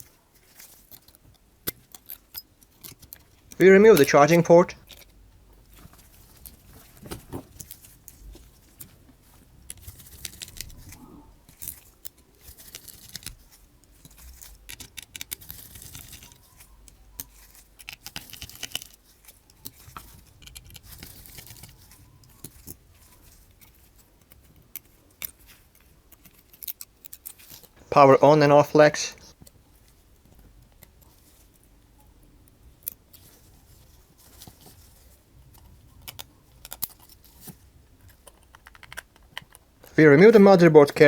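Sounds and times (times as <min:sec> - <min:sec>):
small tools clicking and tapping: 0:00.0 - 0:04.1, 0:04.8 - 0:06.6, 0:09.7 - 0:27.7, 0:35.5 - 0:39.8.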